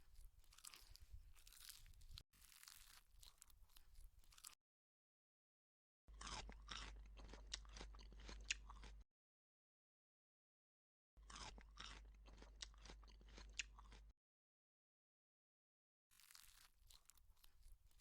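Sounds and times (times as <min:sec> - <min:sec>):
person chewing crunchy food: 0:00.0 - 0:04.6, 0:06.1 - 0:09.0, 0:11.2 - 0:14.1, 0:16.1 - 0:18.0.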